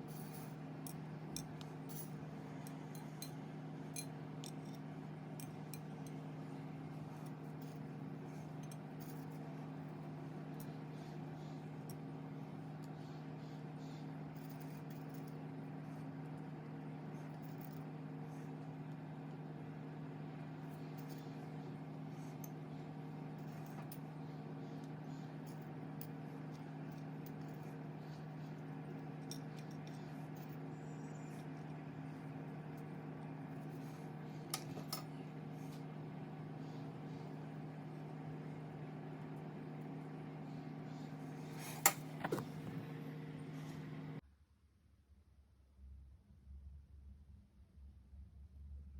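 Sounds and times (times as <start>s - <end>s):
kitchen appliance humming: 18.0s - 44.2s.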